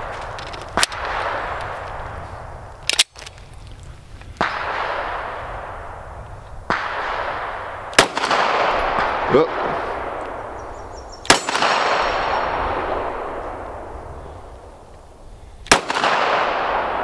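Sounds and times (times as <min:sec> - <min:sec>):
pistol shots with long echo: 0:04.4 - 0:06.0, 0:06.7 - 0:10.6, 0:11.2 - 0:14.2, 0:15.7 - 0:17.0.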